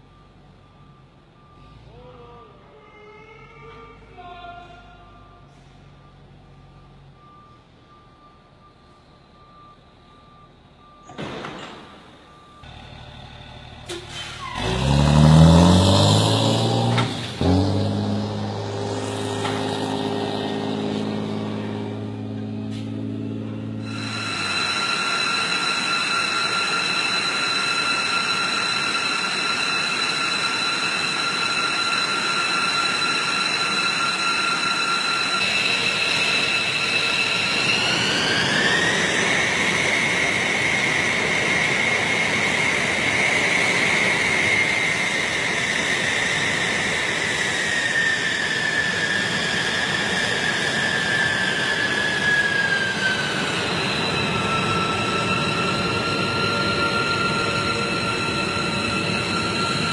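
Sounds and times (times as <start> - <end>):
jet engine turbine whine: 16.9 - 59.9.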